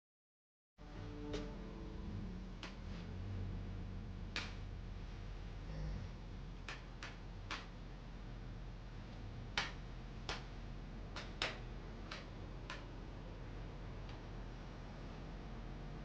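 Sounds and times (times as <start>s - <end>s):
faint low hum: 0.8s - 16.0s
sharp clicks: 9.5s - 10.5s, 11.1s - 13.0s.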